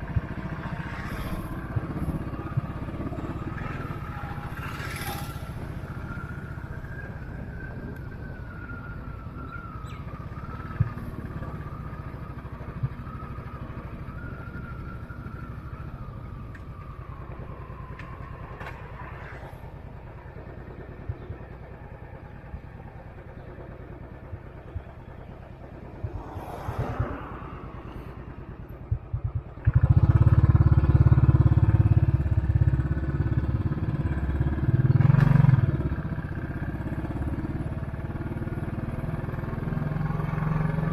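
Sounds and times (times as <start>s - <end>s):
motorcycle engine running: 28.8s - 40.9s.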